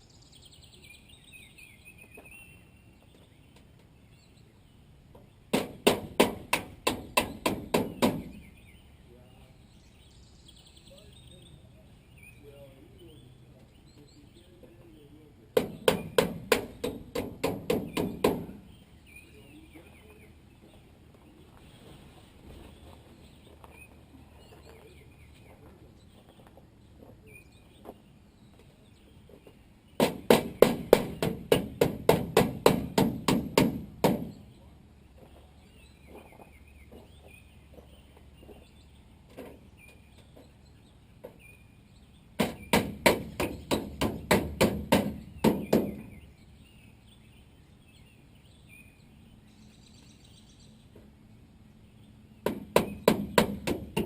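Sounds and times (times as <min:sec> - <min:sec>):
faint birdsong: 0:00.0 - 0:54.0
hammer driving nails into wood: 0:05.5 - 0:08.4, 0:15.6 - 0:18.6, 0:30.0 - 0:34.4, 0:42.4 - 0:46.1, 0:52.4 - 0:54.0.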